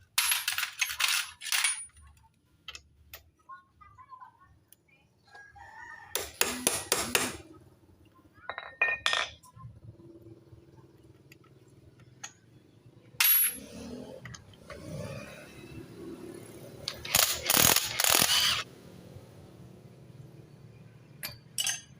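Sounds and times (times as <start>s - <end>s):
metal tools clinking and clattering: 0.1s - 2.2s, 8.5s - 9.6s, 21.2s - 21.9s.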